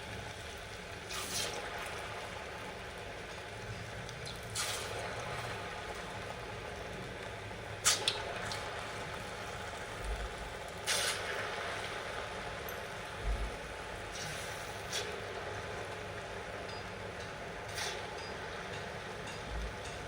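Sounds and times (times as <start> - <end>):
fritters sizzling in hot oil: 0.1 - 15.1.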